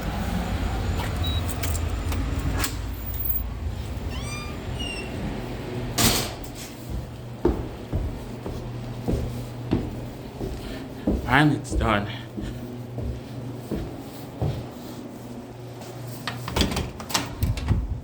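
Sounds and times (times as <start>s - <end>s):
door opening: 0.9s - 6.8s, 16.3s - 18.0s
keys jingling: 1.1s - 3.5s
dog whining: 4.0s - 5.2s.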